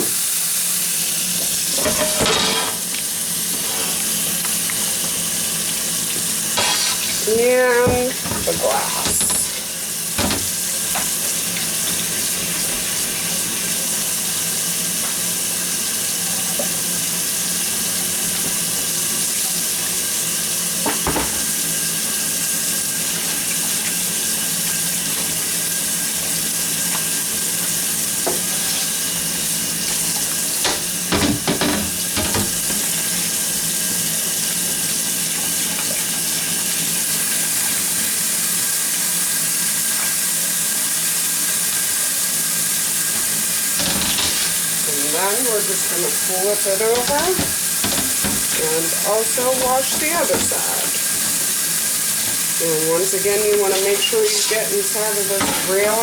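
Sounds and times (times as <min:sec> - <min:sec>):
tap running into a sink: 0:01.4 - 0:14.1, 0:20.8 - 0:22.2, 0:23.0 - 0:36.8, 0:43.1 - 0:52.6.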